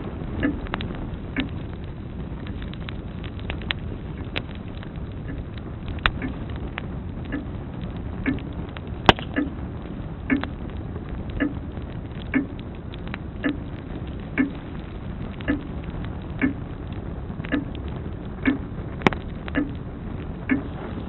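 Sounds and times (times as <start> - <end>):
log fire crackling: 0.0 - 21.0
grandfather clock ticking: 0.4 - 0.6, 6.1 - 6.4, 9.2 - 9.6, 10.3 - 10.5, 11.4 - 11.6, 12.3 - 12.6, 13.4 - 13.7, 14.4 - 14.6, 15.4 - 15.7, 16.4 - 16.6, 17.5 - 17.8, 18.4 - 18.6, 20.5 - 20.7
sharp pop from fire: 9.0 - 9.6, 18.4 - 19.7.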